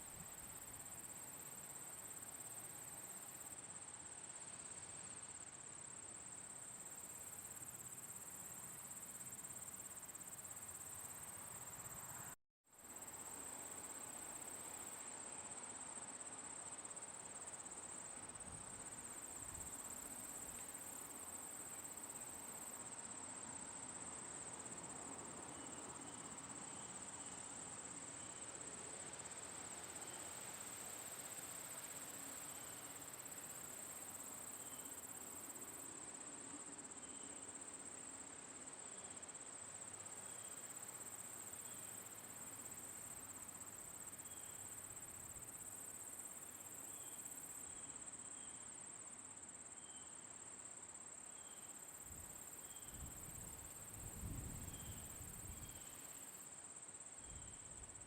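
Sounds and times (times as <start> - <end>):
outdoor background hiss: 0.0 - 58.0
crickets trilling: 16.6 - 50.5, 51.1 - 58.0.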